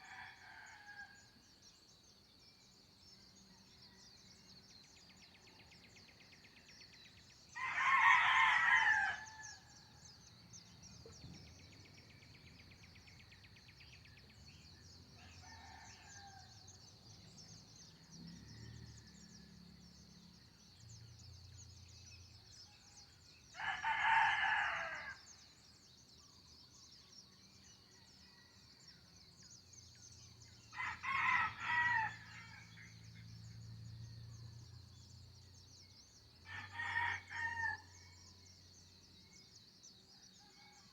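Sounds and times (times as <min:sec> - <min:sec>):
rooster crowing: 0:07.6 - 0:09.6, 0:23.6 - 0:25.2, 0:30.8 - 0:32.7.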